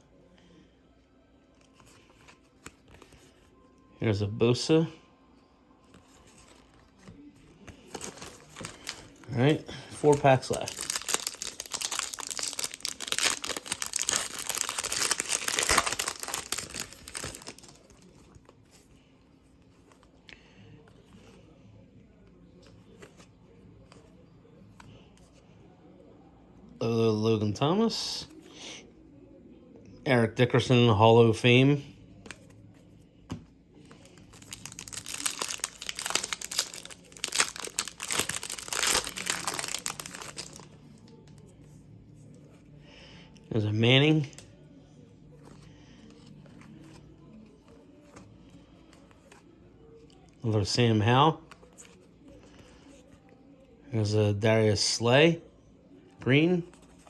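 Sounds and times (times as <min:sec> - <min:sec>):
plastic wrappers crinkling: 0:06.0 - 0:18.9, 0:33.8 - 0:41.5.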